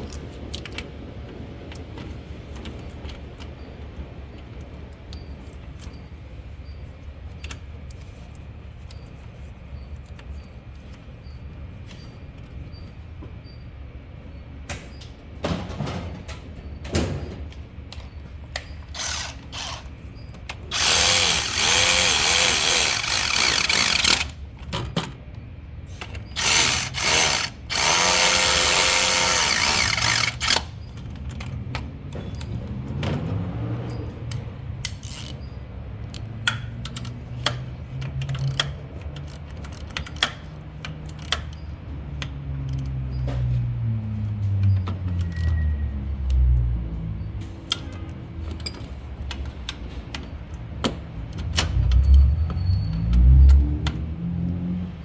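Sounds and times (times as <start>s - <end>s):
tools clicking and knocking: 15.5s - 25.2s, 26.0s - 45.7s, 47.5s - 54.6s
cordless power tool motor: 19.0s - 19.9s, 20.7s - 24.4s, 26.4s - 30.7s.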